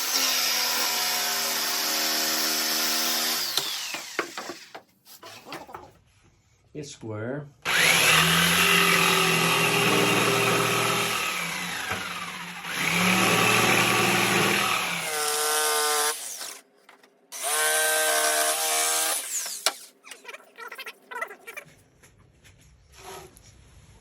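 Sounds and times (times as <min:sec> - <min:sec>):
electric saw cutting plywood: 0:00.0 - 0:04.6, 0:07.7 - 0:16.6, 0:17.4 - 0:19.8.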